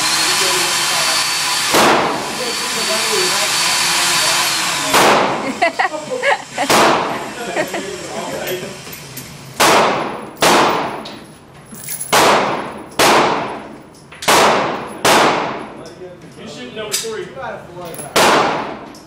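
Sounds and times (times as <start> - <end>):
echoing gunshots: 1.7 - 2.3, 4.9 - 5.4, 6.7 - 7.1, 9.6 - 11.0, 12.1 - 15.7, 18.1 - 18.8.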